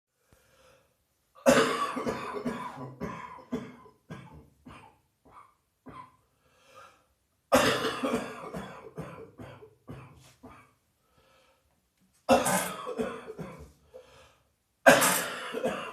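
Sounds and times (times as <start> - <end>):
person coughing heavily: 1.4 - 6.2, 7.5 - 10.8, 12.3 - 13.8, 14.9 - 15.9.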